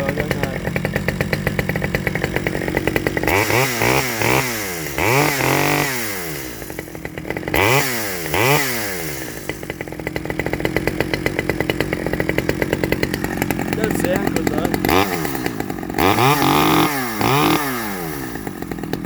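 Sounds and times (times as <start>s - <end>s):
chainsaw idling and revving: 0.0s - 19.0s.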